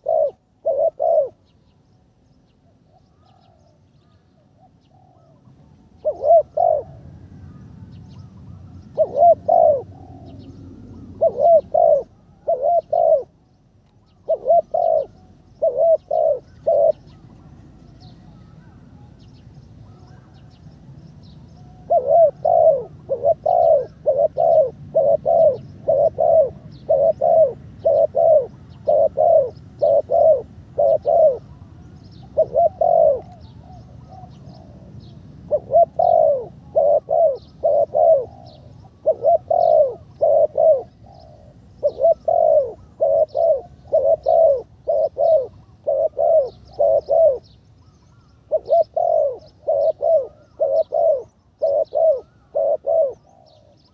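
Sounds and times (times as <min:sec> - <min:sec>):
dove cooing: 0:00.0 - 0:01.5, 0:04.6 - 0:13.4, 0:14.0 - 0:53.9
faint small bird chirps: 0:10.3 - 0:22.5.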